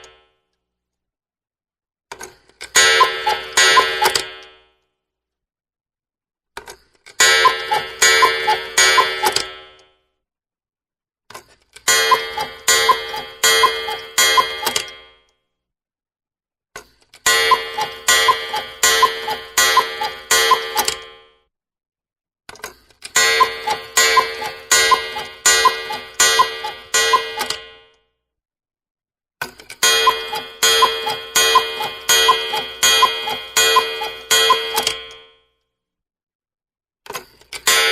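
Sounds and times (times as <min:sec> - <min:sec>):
cuckoo clock chiming: 0:02.8 - 0:04.4, 0:07.2 - 0:09.6, 0:11.9 - 0:14.9, 0:17.3 - 0:21.1, 0:23.1 - 0:27.8, 0:29.7 - 0:35.2, 0:37.6 - 0:37.9.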